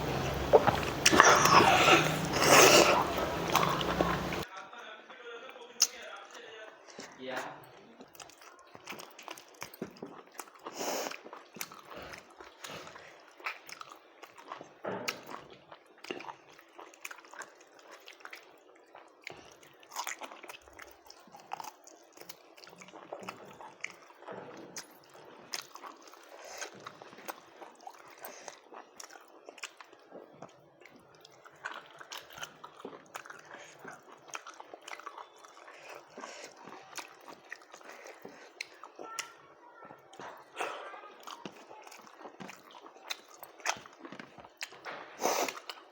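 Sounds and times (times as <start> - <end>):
wet mouth clicks: 0.0 - 4.4
person chewing and crunching: 0.0 - 4.5, 6.9 - 39.4, 40.0 - 45.9.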